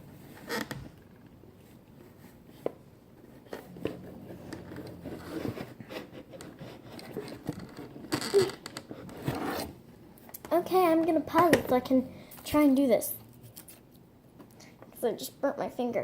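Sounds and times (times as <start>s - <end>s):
loud scraping rustles: 3.4s - 8.0s.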